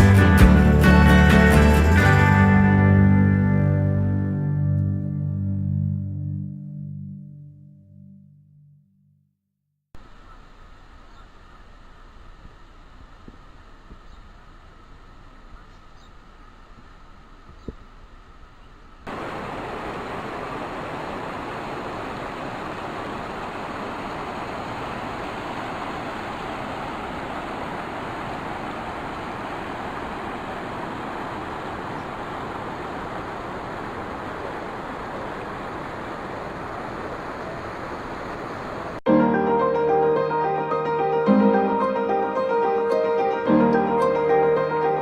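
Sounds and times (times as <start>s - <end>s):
quiet hiss: 10.0s - 23.6s
waterfall rushing: 19.1s - 39.0s.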